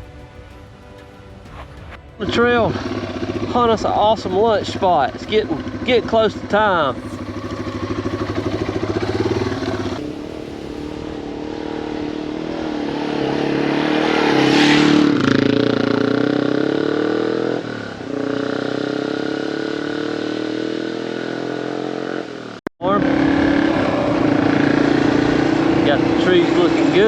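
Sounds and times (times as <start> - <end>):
motorcycle engine revving: 0.0 - 27.0
wind noise: 6.8 - 15.6.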